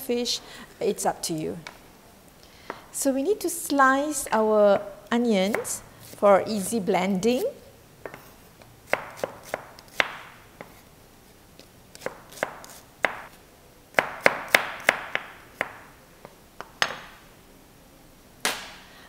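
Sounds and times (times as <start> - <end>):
knife chopping on cutting board: 8.9 - 10.8, 12.0 - 13.3, 14.0 - 15.8.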